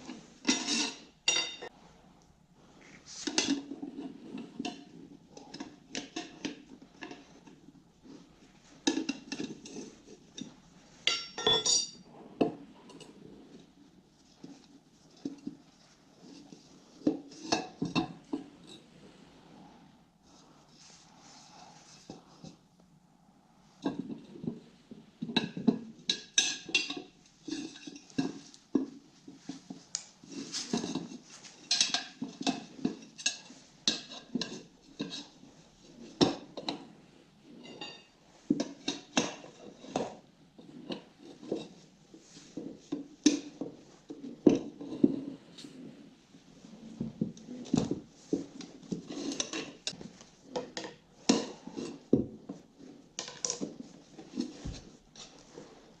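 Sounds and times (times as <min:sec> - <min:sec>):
metal tools clinking on wheel rim: 0:00.5 - 0:01.7, 0:11.0 - 0:12.0.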